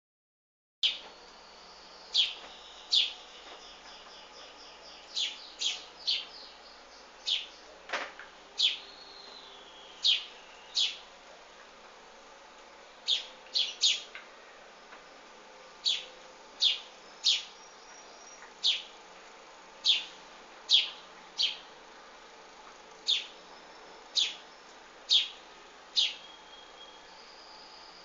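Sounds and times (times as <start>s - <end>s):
small birds chirping: 0.8s - 7.8s, 8.6s - 11.1s, 13.0s - 14.2s, 14.8s - 28.0s.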